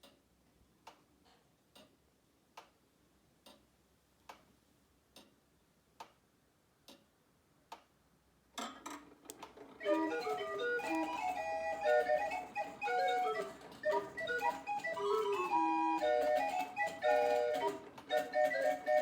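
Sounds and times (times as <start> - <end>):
clock ticking faintly: 0.0 - 2.8, 3.4 - 6.2, 6.8 - 8.0
mechanical clicks and clatter: 8.6 - 19.0.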